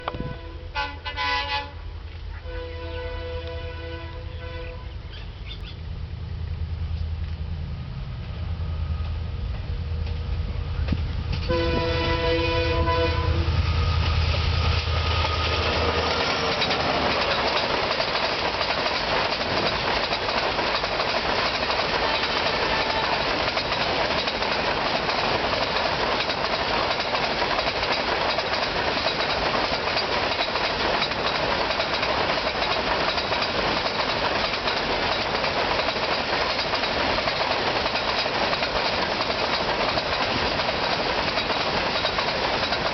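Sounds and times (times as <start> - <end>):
multi-tone train horn: 0.0 - 5.1, 11.4 - 14.0, 21.9 - 23.4
diesel locomotive running: 0.0 - 42.9
wagons rolling with clickety-clack: 16.2 - 42.9.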